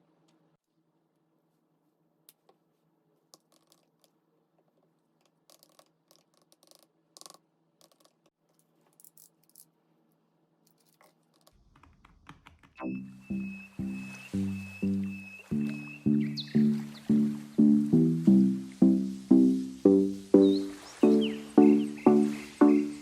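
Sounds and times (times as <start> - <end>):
music: 12.8 - 23.0.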